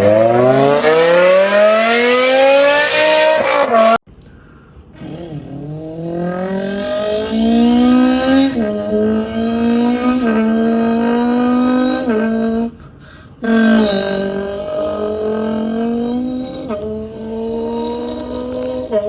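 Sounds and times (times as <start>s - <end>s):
person imitating car engine: 5.0s - 19.0s.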